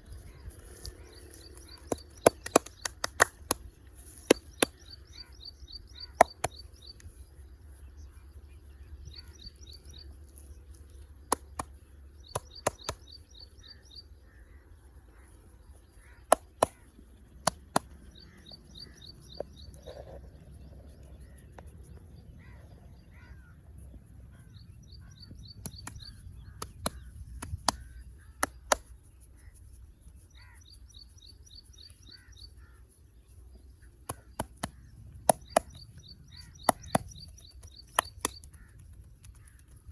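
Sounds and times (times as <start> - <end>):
hands slapping and clapping: 1.7 - 4.9, 6.1 - 6.6, 11.2 - 13.1, 16.2 - 18.1, 25.6 - 29.0, 34.0 - 39.8.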